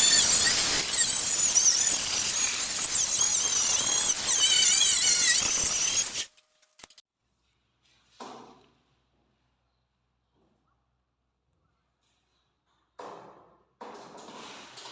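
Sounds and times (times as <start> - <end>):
harsh hiss: 0.0 - 6.3
power tool whining: 0.0 - 6.3.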